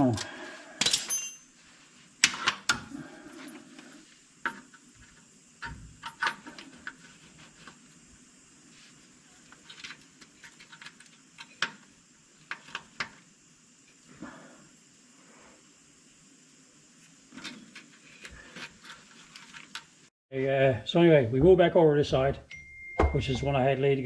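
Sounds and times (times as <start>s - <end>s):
metal tools clinking: 0.0s - 1.6s.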